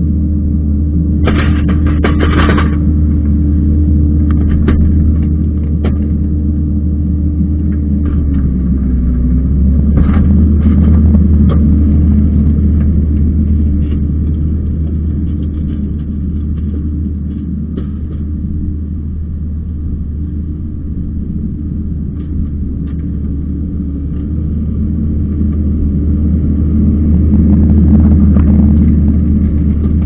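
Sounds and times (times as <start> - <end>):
diesel engine running under load: 0.0 - 30.0
rake scraping and rattling soil: 1.3 - 3.3, 10.0 - 18.6.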